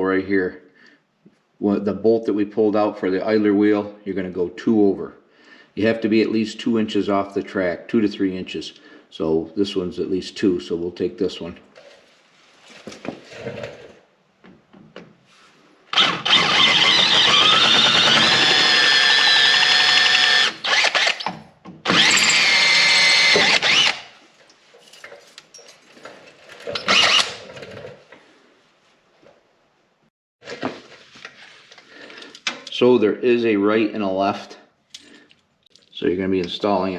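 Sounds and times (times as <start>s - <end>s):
power drill drilling: 15.9s - 24.1s, 26.8s - 27.4s.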